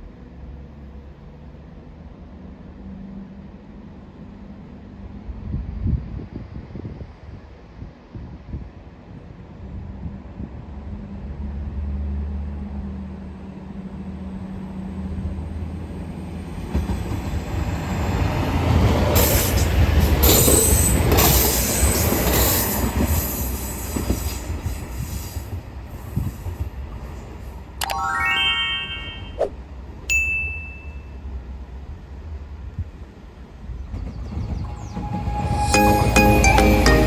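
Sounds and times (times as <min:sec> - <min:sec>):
wheels squealing on rails: 0:16.8 - 0:26.7, 0:33.9 - 0:37.0
train rumbling: 0:33.4 - 0:37.0.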